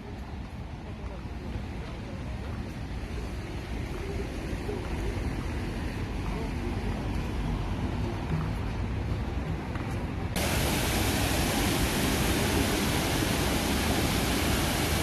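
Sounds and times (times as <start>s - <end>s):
falling water rushing: 10.4s - 15.0s
low rumbling noise: 10.4s - 15.0s.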